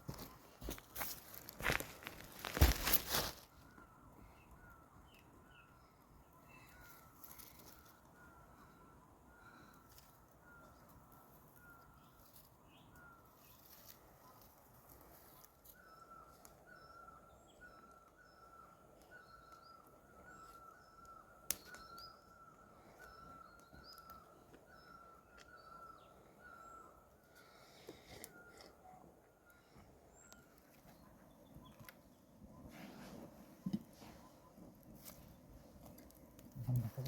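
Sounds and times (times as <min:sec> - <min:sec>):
background birds chirping: 0:00.0 - 0:37.0.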